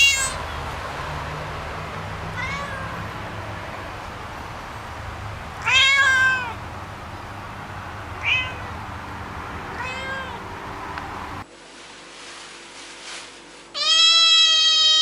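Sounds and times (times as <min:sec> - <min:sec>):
cat meowing: 0:00.0 - 0:00.4, 0:02.3 - 0:03.0, 0:05.6 - 0:06.6, 0:08.2 - 0:08.8, 0:09.7 - 0:10.4, 0:13.8 - 0:15.0.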